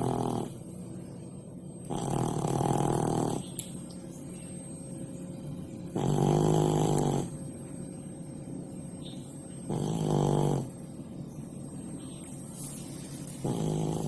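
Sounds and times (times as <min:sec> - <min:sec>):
cat snoring: 0:00.0 - 0:00.6, 0:01.9 - 0:03.4, 0:06.0 - 0:07.4, 0:09.7 - 0:10.8, 0:13.4 - 0:14.0.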